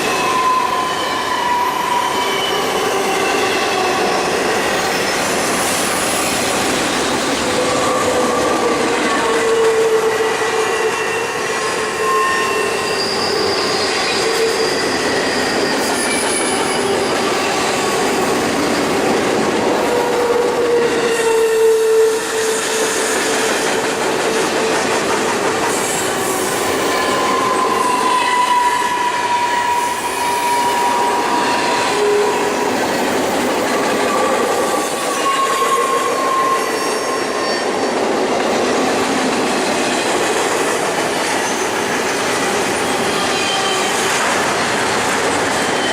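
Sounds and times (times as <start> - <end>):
freight train wheels rumbling: 0.0 - 45.9
wheels squealing: 10.8 - 18.1.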